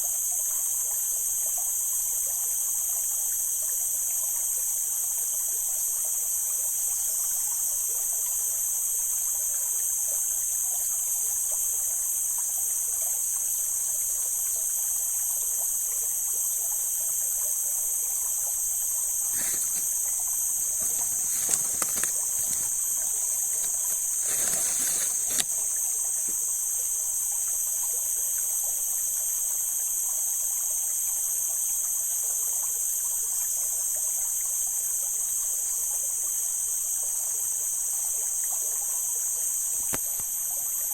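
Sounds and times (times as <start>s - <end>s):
stream water flowing: 0.3s - 36.0s
high-pitched hiss: 5.8s - 32.0s.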